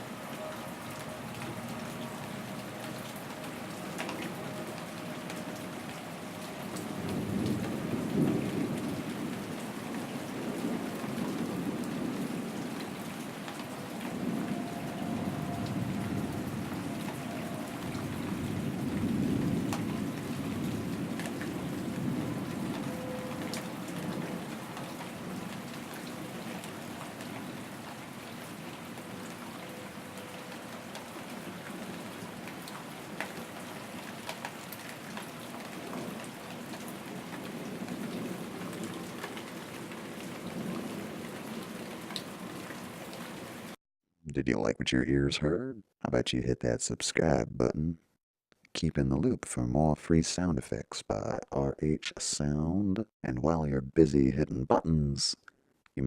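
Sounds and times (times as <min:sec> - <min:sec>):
steady rain falling: 0:00.0 - 0:43.8
low rolls of thunder: 0:06.7 - 0:13.3, 0:13.9 - 0:25.6, 0:35.8 - 0:39.2, 0:40.0 - 0:41.8.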